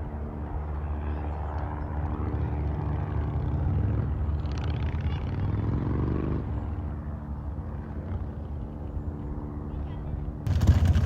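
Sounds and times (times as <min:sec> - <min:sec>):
motorcycle engine rumbling: 0:10.5 - 0:11.0.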